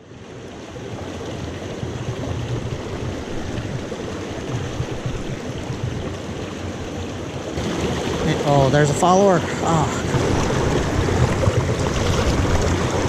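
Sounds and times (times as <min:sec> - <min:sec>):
creek water rushing: 0:00.0 - 0:13.0.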